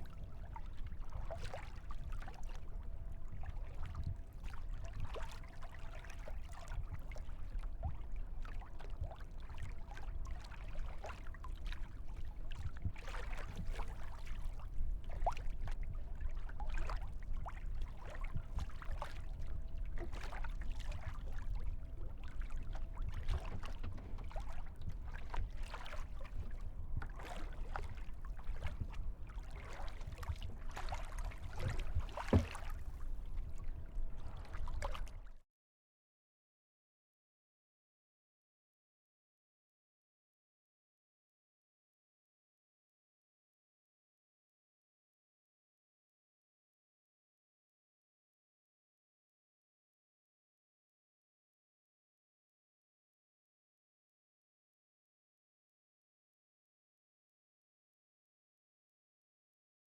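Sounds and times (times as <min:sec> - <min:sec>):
water splashing around kayak: 0:12.4 - 0:35.2.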